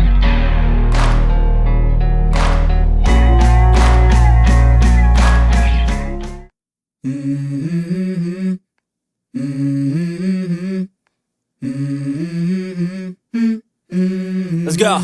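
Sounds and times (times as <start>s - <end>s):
background music: 0.0s - 6.5s
person humming: 7.0s - 8.6s, 11.6s - 15.0s.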